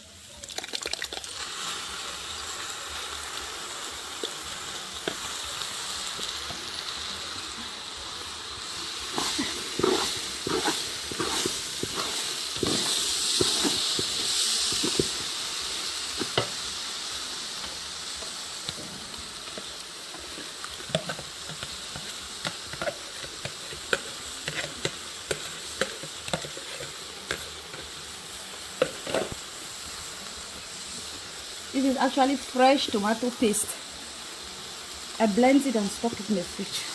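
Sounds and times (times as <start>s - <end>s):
rice sizzling in a pot: 0.0s - 36.9s.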